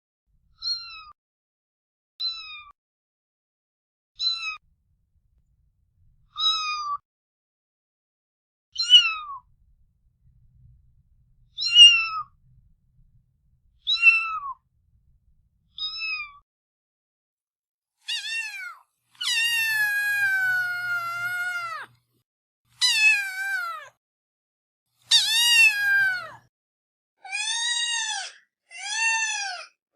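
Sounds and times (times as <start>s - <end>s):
cat meowing: 0.6s - 1.1s, 2.2s - 2.7s, 4.2s - 4.6s, 6.3s - 7.0s, 8.8s - 9.5s, 11.5s - 12.4s, 13.8s - 14.6s, 15.7s - 16.4s, 18.0s - 22.0s, 22.8s - 23.9s, 25.1s - 26.4s, 27.2s - 29.7s.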